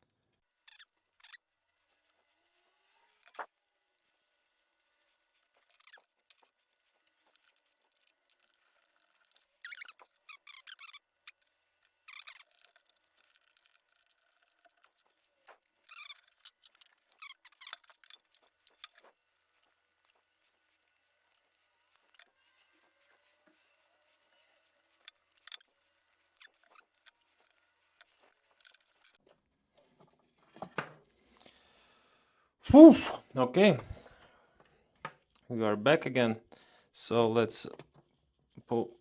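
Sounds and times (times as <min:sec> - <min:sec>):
wires rustling and squeaking: 0:00.6 - 0:29.2
small clicks of handling wires: 0:25.0 - 0:25.7.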